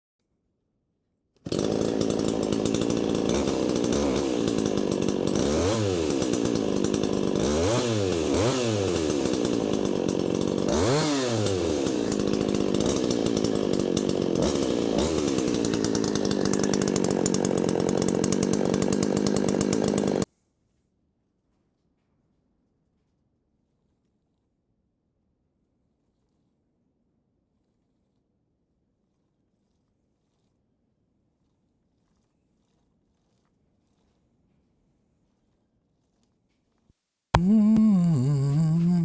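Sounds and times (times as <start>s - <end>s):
chainsaw revving: 1.5s - 20.3s, 37.4s - 39.0s.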